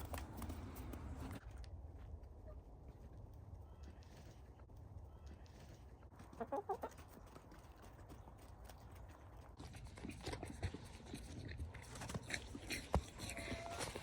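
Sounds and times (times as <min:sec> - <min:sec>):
chickens clucking: 0:05.2 - 0:08.9, 0:11.9 - 0:14.0.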